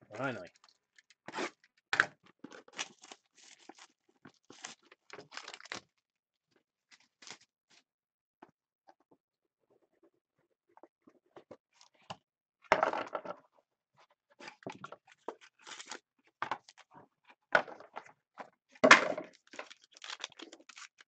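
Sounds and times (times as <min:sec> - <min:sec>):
packaging tearing crunches: 0:02.5 - 0:05.8, 0:15.5 - 0:16.0, 0:19.3 - 0:21.0
plastic wrap and cardboard crinkling: 0:02.5 - 0:05.9, 0:14.4 - 0:16.0, 0:19.2 - 0:21.0.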